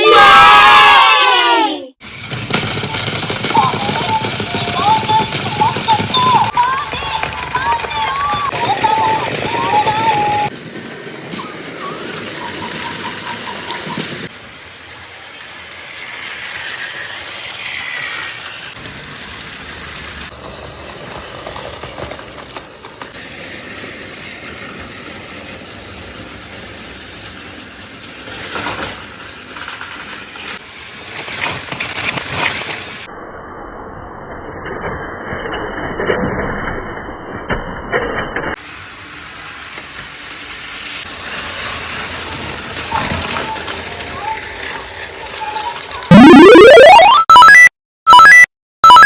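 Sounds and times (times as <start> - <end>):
toy train motors whirring: 11.2 - 20.4, 21.0 - 30.6
wheels clattering on plastic track: 16.0 - 32.8
short beeps: 46.1 - 49.0.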